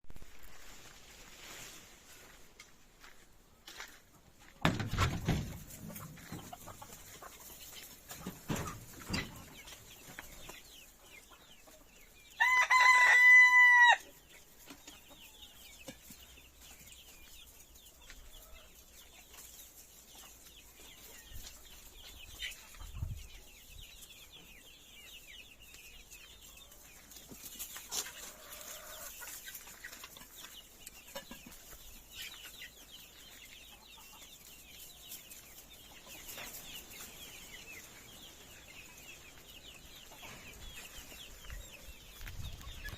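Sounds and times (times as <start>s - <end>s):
rooster crowing: 12.4s - 14.0s.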